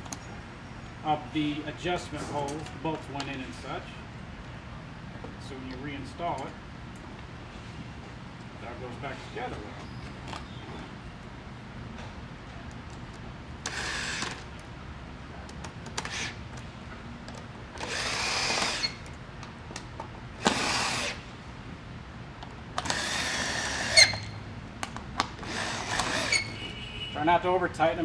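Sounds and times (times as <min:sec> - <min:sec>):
power drill driving bolts: 0:13.6 - 0:14.5, 0:15.9 - 0:16.4, 0:17.8 - 0:19.2, 0:20.4 - 0:21.2, 0:22.8 - 0:24.4, 0:25.3 - 0:26.6.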